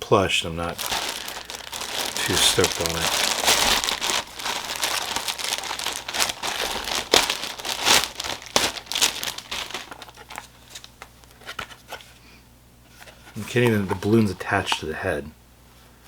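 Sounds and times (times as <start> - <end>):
plastic packaging crinkling: 0.5 - 12.0.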